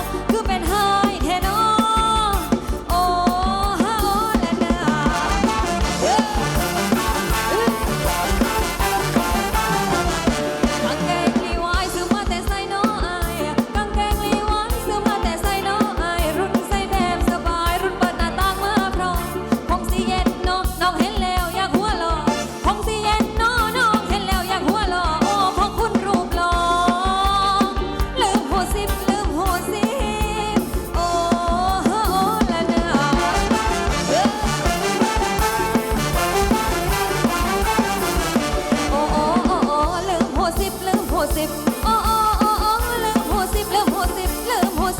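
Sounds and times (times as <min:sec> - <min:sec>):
dance band music: 0:00.0 - 0:13.7, 0:22.2 - 0:24.1, 0:30.3 - 0:44.9
bending melody line: 0:00.0 - 0:18.0, 0:29.0 - 0:44.6
steady drum beat: 0:00.0 - 0:44.9.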